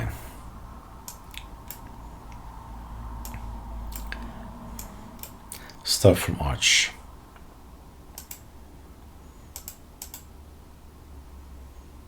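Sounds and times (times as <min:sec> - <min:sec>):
low steady hum: 0:00.0 - 0:12.0
keyboard and mouse clicks: 0:03.2 - 0:05.8, 0:08.1 - 0:08.5, 0:09.5 - 0:10.3.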